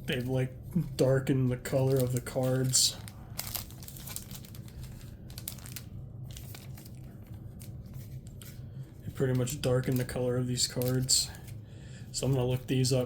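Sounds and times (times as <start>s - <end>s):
steady low hum: 0.0s - 13.0s
plastic packaging crinkling: 1.7s - 11.6s.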